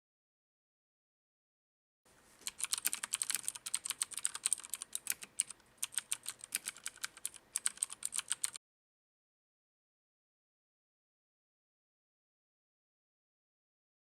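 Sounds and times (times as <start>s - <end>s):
mechanical keyboard key clicks: 2.4s - 8.6s.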